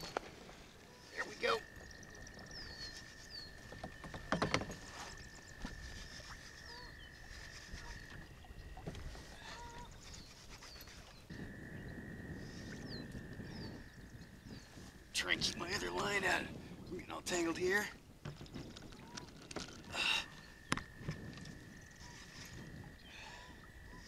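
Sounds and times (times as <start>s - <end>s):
birds chirping: 0.0s - 24.0s
soft rushing of water or wind: 0.0s - 24.0s.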